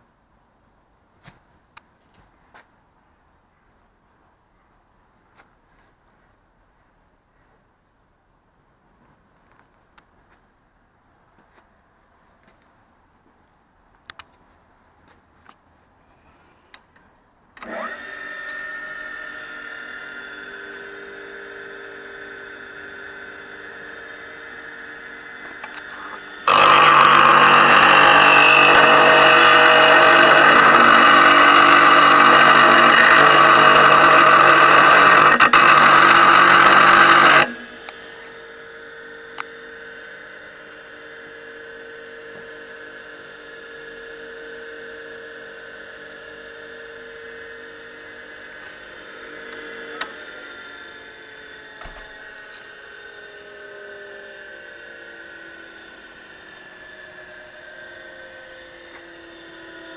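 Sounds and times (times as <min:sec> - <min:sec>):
harsh grinding noise: 0:17.6 - 0:56.9
bench grinder motor hum: 0:17.6 - 0:59.9.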